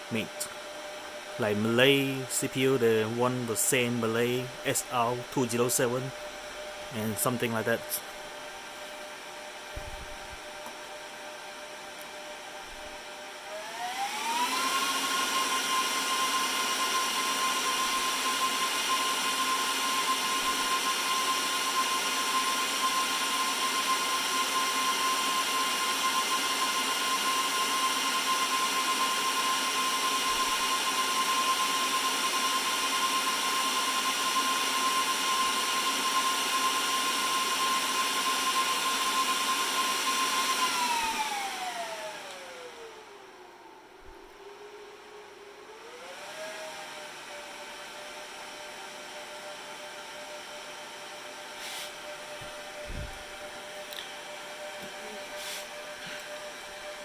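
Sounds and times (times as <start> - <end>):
server fans whining: 0.0 - 23.6, 40.2 - 47.9, 50.4 - 57.0.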